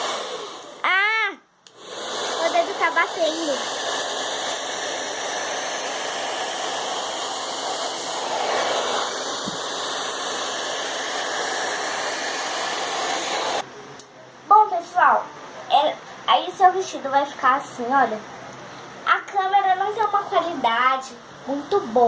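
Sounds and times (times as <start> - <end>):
hair dryer blowing: 0.0 - 13.6.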